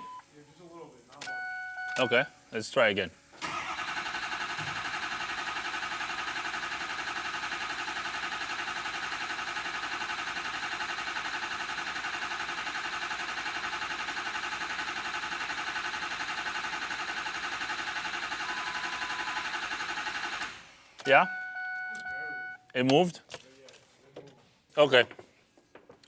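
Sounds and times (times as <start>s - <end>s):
diesel engine cranking: 0.0s - 23.3s.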